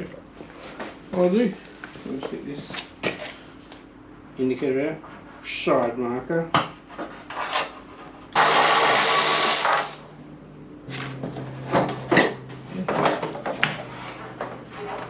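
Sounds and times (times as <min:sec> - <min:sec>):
steady low hum: 0:09.6 - 0:15.0.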